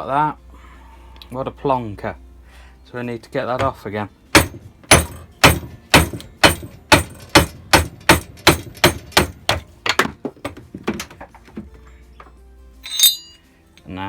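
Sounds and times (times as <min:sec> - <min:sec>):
hammer knocking on metal: 0:04.4 - 0:11.7.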